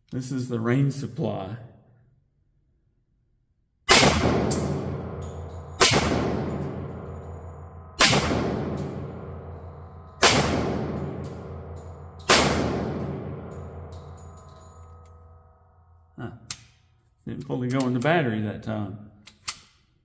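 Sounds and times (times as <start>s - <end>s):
pistol shots echoing: 3.9s - 14.6s.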